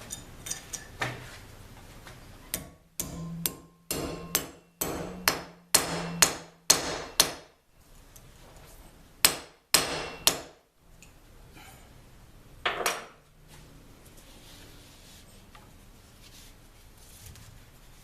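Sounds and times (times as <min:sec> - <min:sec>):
hammer strikes ringing: 0:02.6 - 0:07.5, 0:09.3 - 0:10.6.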